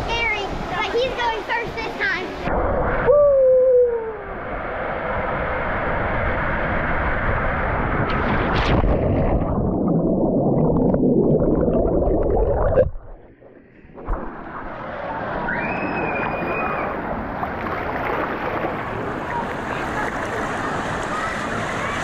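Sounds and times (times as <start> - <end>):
low rumble: 4.4 - 15.6
rushing churning water: 14.1 - 22.0.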